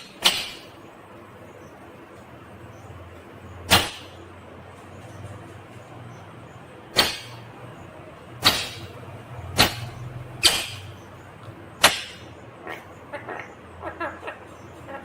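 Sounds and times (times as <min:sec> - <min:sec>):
parakeet squawking: 0:11.8 - 0:15.0.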